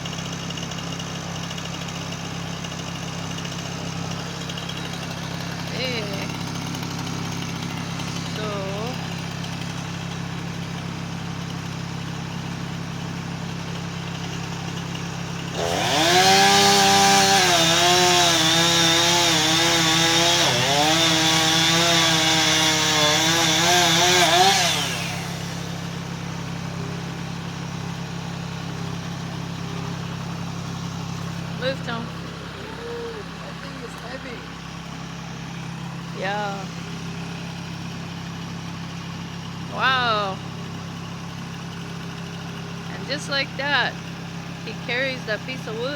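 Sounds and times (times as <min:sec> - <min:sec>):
chainsaw idling and cutting wood: 0:00.0 - 0:45.9.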